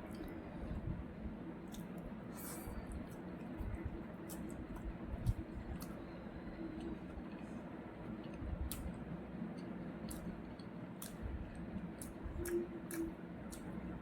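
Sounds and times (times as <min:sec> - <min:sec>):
faint steady hum: 0:00.0 - 0:14.0
person chewing food: 0:01.6 - 0:06.2, 0:08.1 - 0:14.0
wet mouth clicks and smacks: 0:08.7 - 0:08.9, 0:09.6 - 0:11.2, 0:12.0 - 0:13.7.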